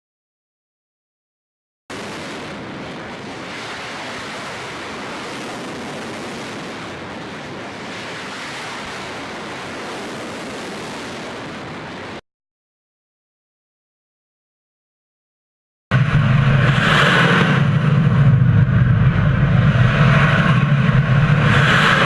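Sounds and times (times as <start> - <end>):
steady rushing noise: 1.9 - 12.2, 15.9 - 22.0.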